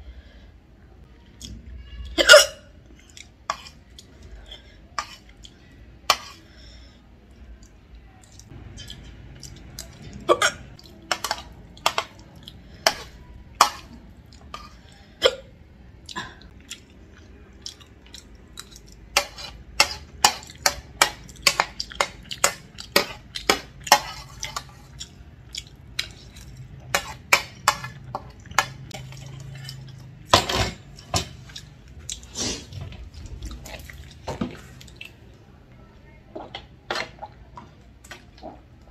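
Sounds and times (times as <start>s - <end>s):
woman hiccuping: 2.2s - 2.7s.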